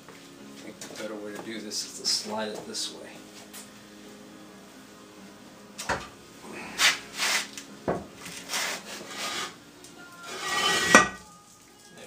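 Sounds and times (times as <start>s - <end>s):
metal scraping on metal: 8.5s - 9.6s, 10.2s - 11.3s.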